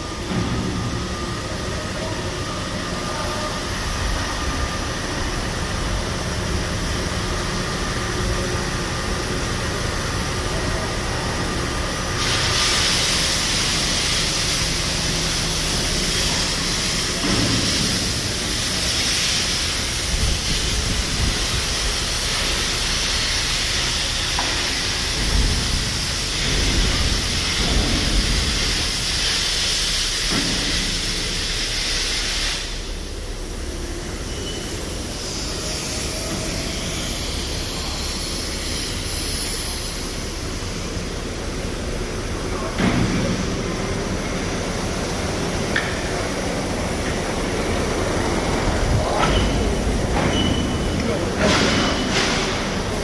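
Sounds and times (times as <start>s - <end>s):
machinery low rumble with hiss: 0.0s - 53.0s
loud high hiss: 2.3s - 42.5s.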